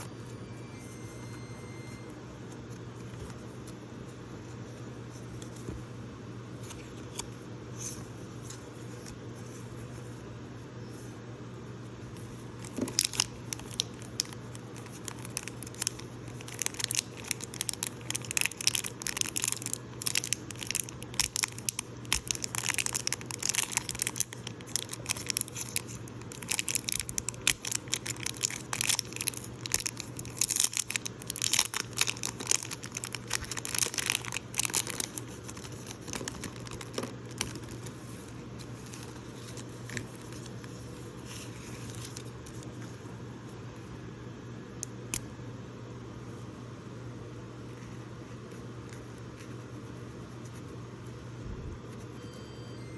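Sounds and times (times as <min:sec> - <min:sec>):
packaging crinkling and tearing: 0:12.2 - 0:42.8.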